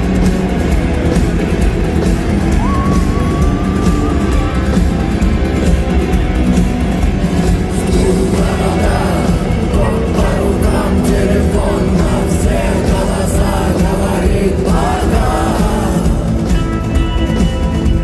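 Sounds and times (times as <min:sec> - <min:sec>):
live rock band playing: 0:00.0 - 0:18.0
person singing: 0:07.7 - 0:16.5.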